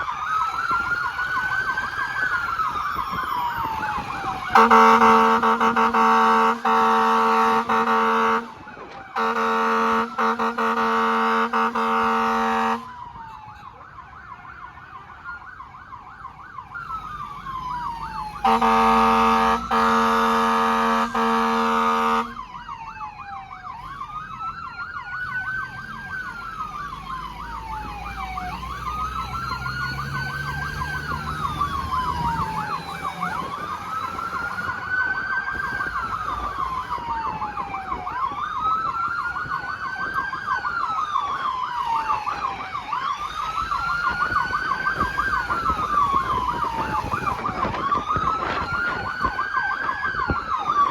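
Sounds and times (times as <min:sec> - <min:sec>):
fire truck siren: 0:00.0 - 0:50.9
fire truck horn blasts: 0:04.5 - 0:12.9, 0:18.4 - 0:22.4.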